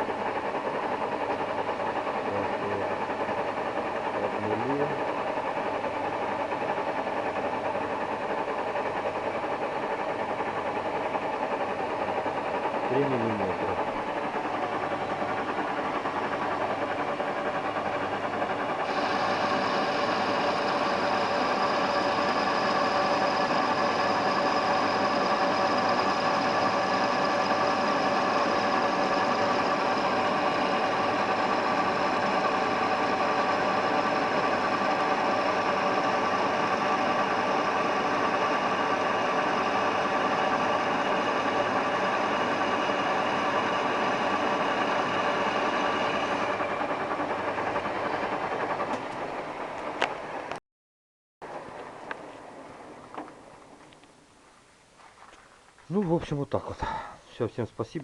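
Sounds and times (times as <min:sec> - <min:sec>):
metal lathe running: 0:00.0 - 0:50.6
high whine: 0:18.8 - 0:49.2.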